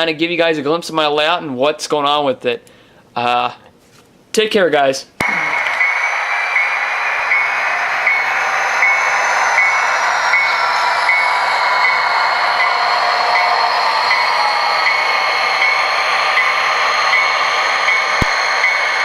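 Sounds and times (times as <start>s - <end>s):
train rumbling: 5.2s - 19.0s.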